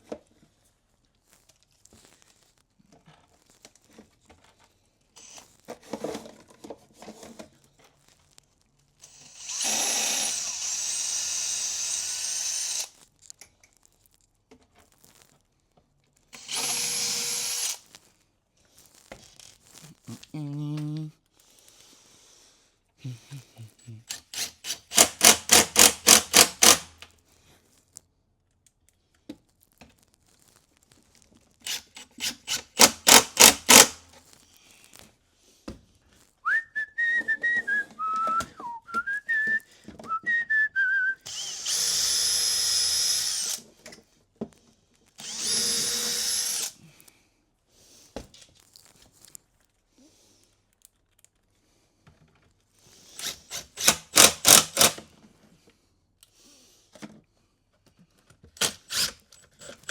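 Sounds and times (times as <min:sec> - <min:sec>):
drill motor running: 0:05.2 - 0:05.4, 0:09.0 - 0:12.9, 0:16.4 - 0:17.8, 0:24.1 - 0:26.9, 0:31.7 - 0:34.0, 0:41.3 - 0:43.6, 0:45.2 - 0:46.7, 0:53.2 - 0:55.0, 0:58.7 - 0:59.9
impact driver rapid clicking: 0:09.0 - 0:12.9, 0:16.4 - 0:17.8, 0:24.1 - 0:27.0, 0:31.7 - 0:34.0, 0:41.3 - 0:43.6, 0:45.2 - 0:46.7, 0:53.2 - 0:55.0, 0:58.6 - 0:59.9
wavering high whistle: 0:36.5 - 0:41.3.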